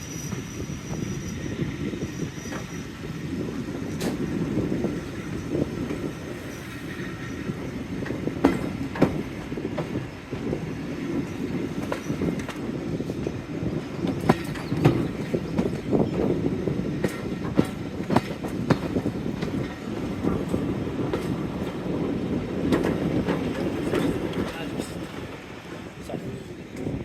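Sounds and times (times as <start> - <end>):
diesel train rumbling: 0.0 - 27.0
wheels knocking on rail: 3.9 - 25.4.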